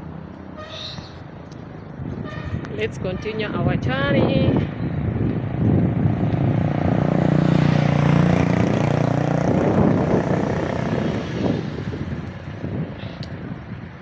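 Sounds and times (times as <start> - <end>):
traffic noise: 0.0 - 14.0
vehicle engine droning: 5.1 - 12.8.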